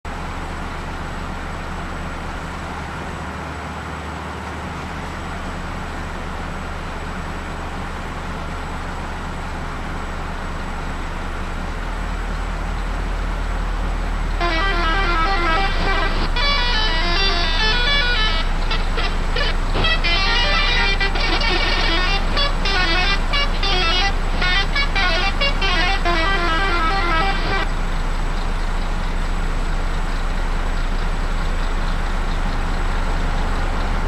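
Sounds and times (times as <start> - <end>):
vehicle rumble: 0.1 - 34.0
multi-tone musical bus horn: 14.3 - 27.8.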